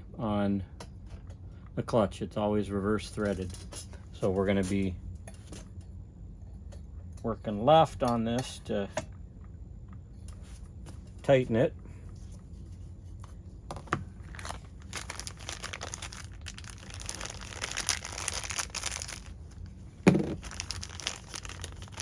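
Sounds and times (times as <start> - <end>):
crinkling handling noise: 11.9 - 22.0.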